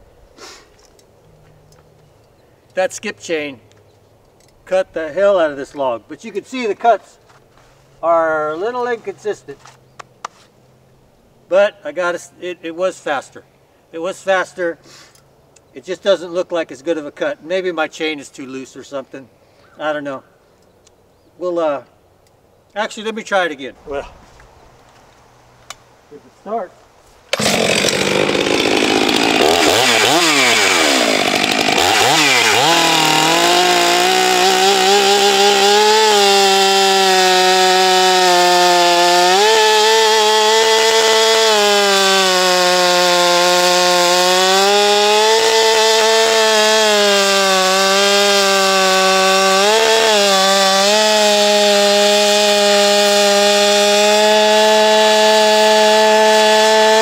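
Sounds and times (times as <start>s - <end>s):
chainsaw cutting through log: 27.3s - 57.0s
chainsaw revving: 27.3s - 57.0s.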